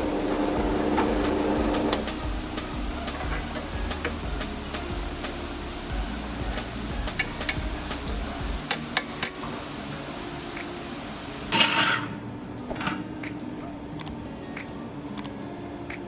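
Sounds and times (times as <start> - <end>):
metal scraping: 0.0 - 10.1, 11.2 - 13.7.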